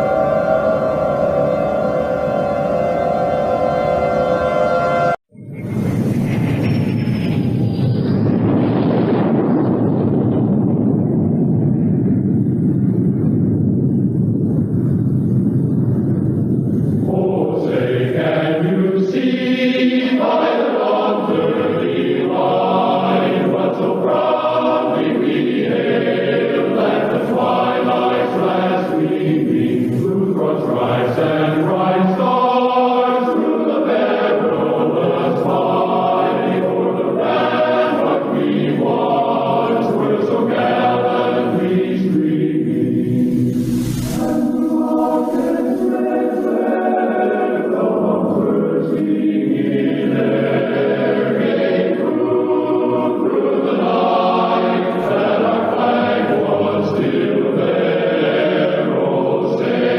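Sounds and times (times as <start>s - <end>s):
choir singing an anthem: 0.0s - 5.2s, 16.9s - 59.9s
low rumbling roar: 0.0s - 19.8s, 34.3s - 46.7s.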